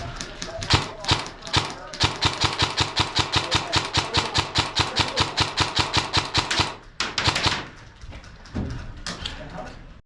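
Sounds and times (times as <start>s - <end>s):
airsoft rifle firing rapidly: 0.2s - 7.8s.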